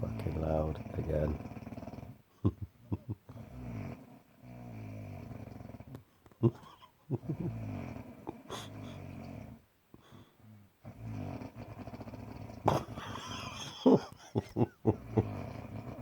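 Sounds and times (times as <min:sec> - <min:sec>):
low rattling snores: 0:00.0 - 0:09.7, 0:10.4 - 0:16.0.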